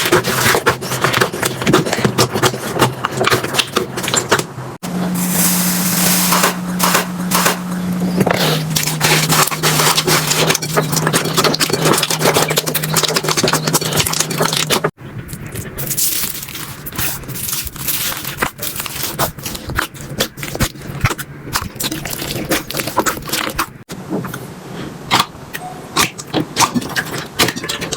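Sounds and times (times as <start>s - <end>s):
low steady hum: 4.7s - 15.9s.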